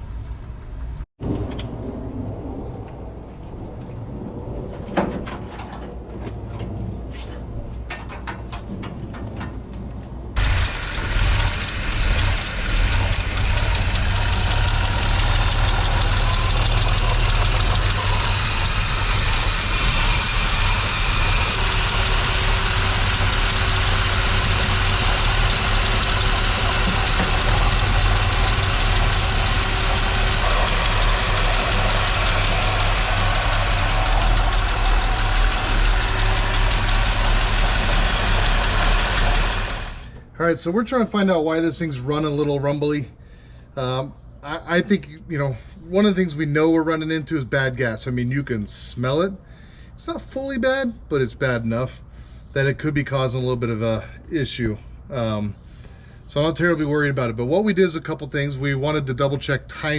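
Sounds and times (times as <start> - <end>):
car engine running rumbly: 3.2 - 40.3.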